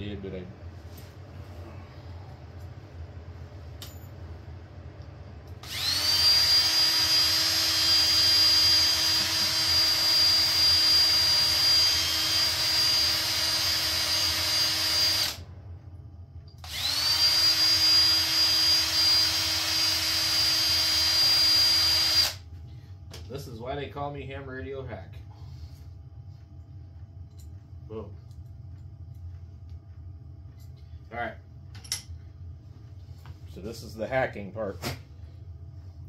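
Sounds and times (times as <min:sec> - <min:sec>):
electric drill whining: 0:05.6 - 0:15.4, 0:16.6 - 0:22.4.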